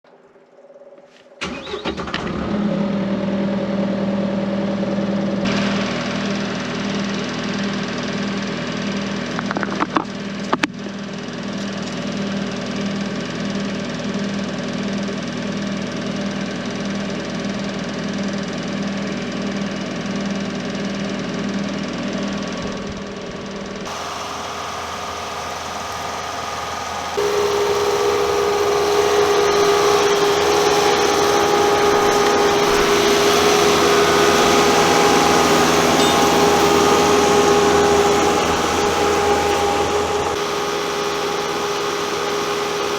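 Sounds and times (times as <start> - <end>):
stump grinder engine running: 1.4 - 15.9, 23.2 - 42.9.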